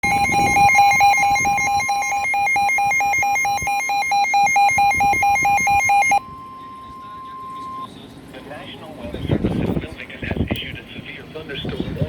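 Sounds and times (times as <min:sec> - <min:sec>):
rapid pulsing beeps: 0:00.0 - 0:07.9
steady warning tone: 0:00.0 - 0:07.9.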